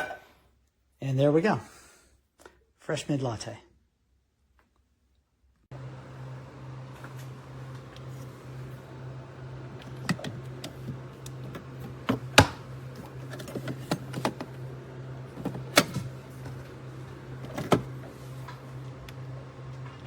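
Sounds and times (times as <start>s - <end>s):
steady low hum: 5.7s - 20.0s.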